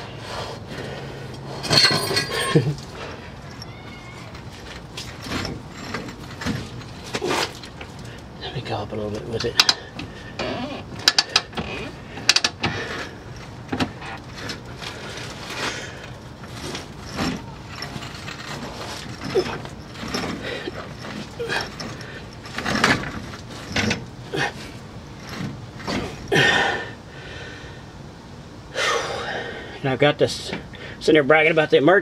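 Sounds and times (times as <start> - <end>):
metal clicks and clanks: 1.3 - 8.2, 9.1 - 24.2.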